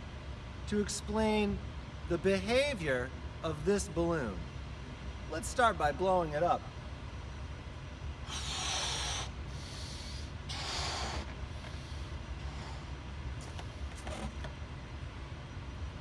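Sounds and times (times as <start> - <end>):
person blowing up a balloon: 8.3 - 11.8.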